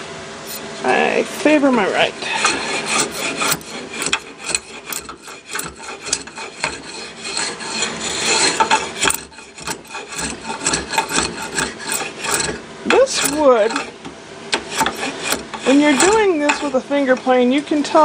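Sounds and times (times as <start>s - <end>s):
hand plane scraping wood: 2.3s - 14.0s, 14.6s - 16.8s.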